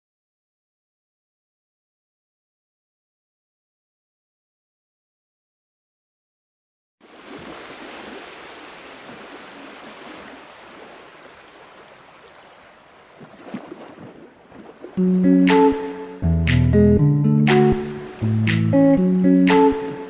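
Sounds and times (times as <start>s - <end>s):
sea surf washing on shore: 7.0s - 16.0s.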